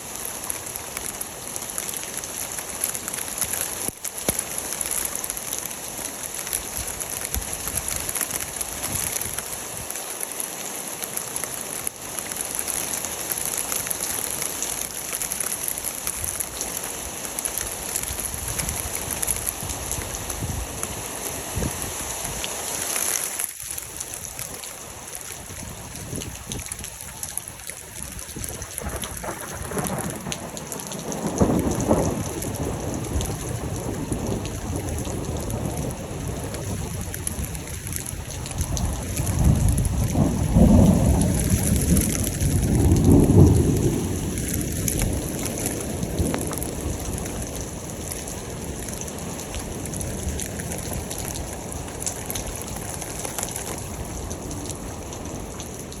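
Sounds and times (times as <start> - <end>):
steady rain falling: 0.0 - 56.0
thunder rumbling: 28.0 - 49.1.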